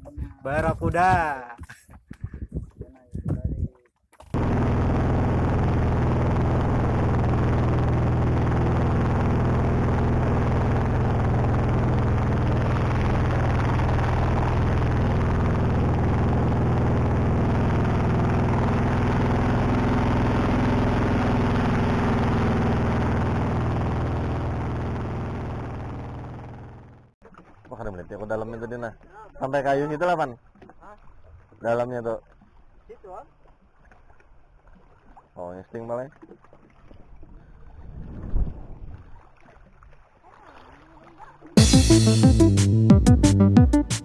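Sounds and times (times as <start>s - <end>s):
boat engine running: 4.4s - 32.0s, 40.5s - 44.0s.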